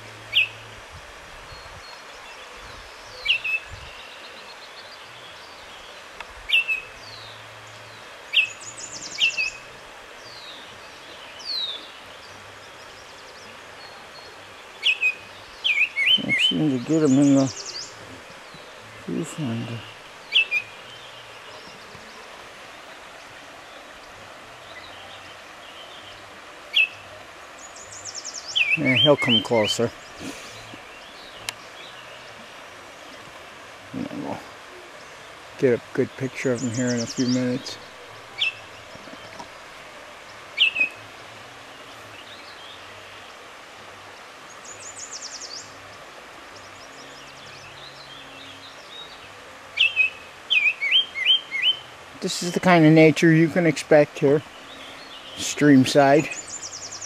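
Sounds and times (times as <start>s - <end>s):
background hiss: 0.0s - 57.0s
river water flowing: 0.0s - 57.0s
faint bird chirps: 8.3s - 33.3s, 36.0s - 43.4s, 44.4s - 51.9s.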